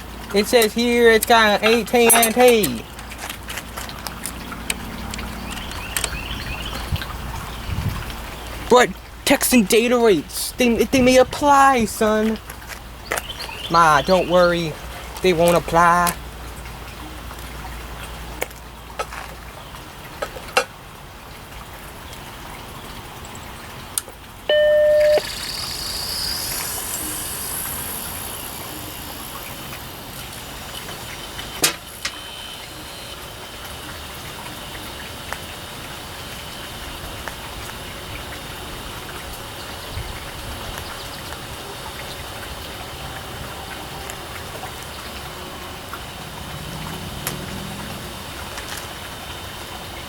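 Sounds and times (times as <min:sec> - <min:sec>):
computer startup beep: 0:24.5 - 0:28.4
hard drive spinning: 0:24.5 - 0:39.1.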